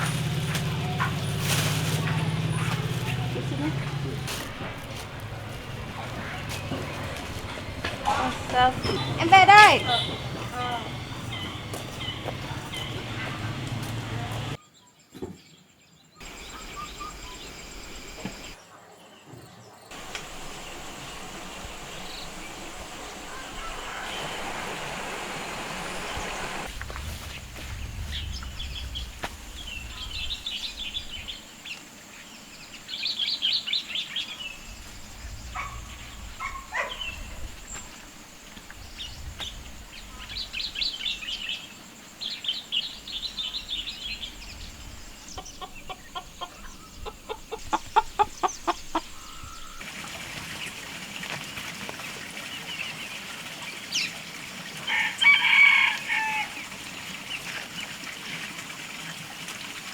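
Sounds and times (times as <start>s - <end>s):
chickens clucking: 0.0s - 14.6s, 19.9s - 26.7s, 44.1s - 49.4s
high bird chirps: 4.1s - 14.6s.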